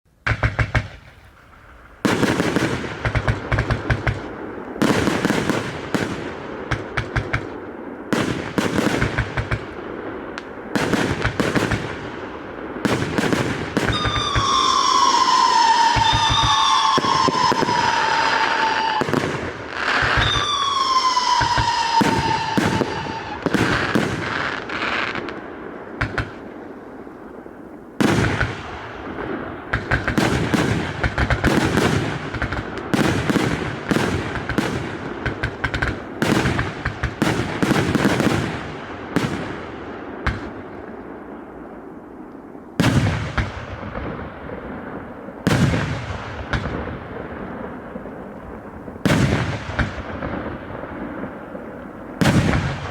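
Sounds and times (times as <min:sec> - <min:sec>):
rapid firework shots and bursts: 0:00.1 - 0:26.6, 0:28.0 - 0:41.4, 0:42.8 - 0:52.9
loud firework bangs: 0:00.2 - 0:26.7, 0:28.0 - 0:41.4, 0:42.8 - 0:52.9
falling firework whistles: 0:13.2 - 0:25.3.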